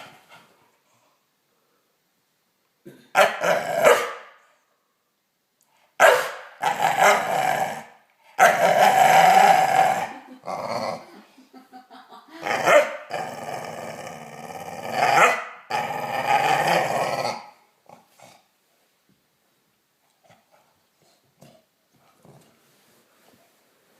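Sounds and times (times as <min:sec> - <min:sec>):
dog growling: 0:03.4 - 0:04.0, 0:06.6 - 0:11.2, 0:12.4 - 0:18.5.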